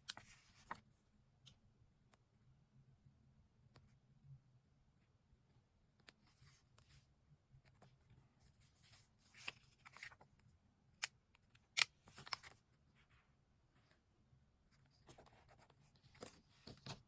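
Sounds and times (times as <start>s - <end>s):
paper rustling: 8.7s - 10.3s, 15.0s - 17.0s.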